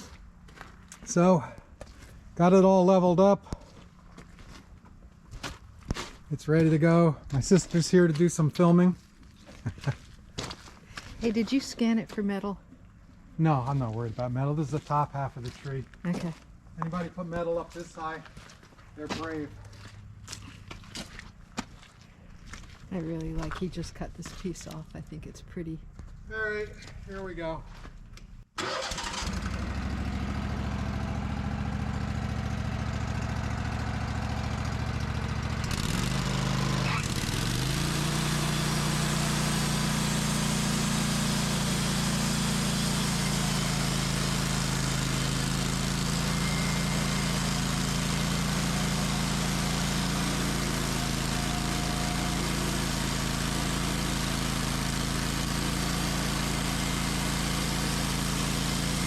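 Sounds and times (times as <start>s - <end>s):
sawmill engine running: 28.6s - 59.0s
saw blade cutting log: 35.7s - 59.0s.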